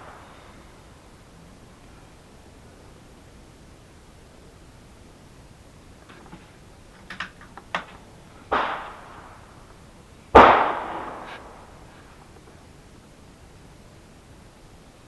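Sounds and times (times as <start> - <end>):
rifle shots with echo: 8.5 - 9.7, 10.4 - 11.9.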